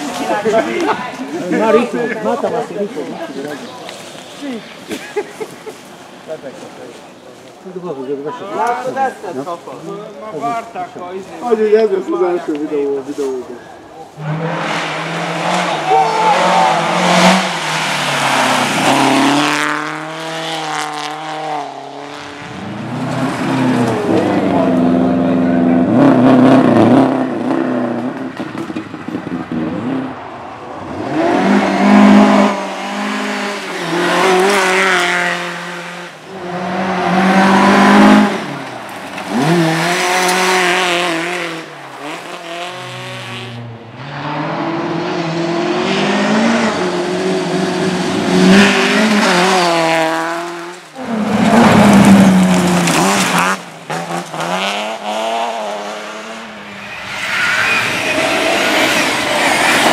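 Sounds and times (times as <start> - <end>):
rally car engines revving: 10.2 - 59.9
tyres squealing and skidding: 13.2 - 19.9, 56.4 - 59.9.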